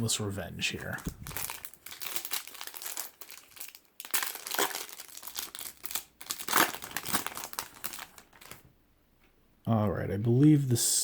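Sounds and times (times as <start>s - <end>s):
foil pack tearing and crinkling: 1.0s - 8.6s.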